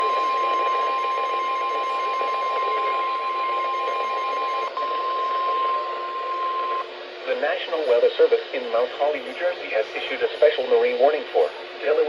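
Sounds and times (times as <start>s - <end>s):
high-pitched alarm tone: 0.0s - 6.9s.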